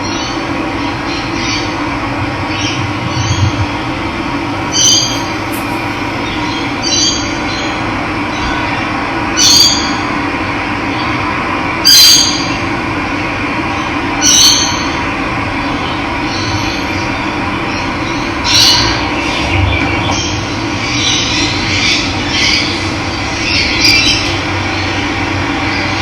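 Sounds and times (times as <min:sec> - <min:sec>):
bird calling: 0:04.6 - 0:07.4.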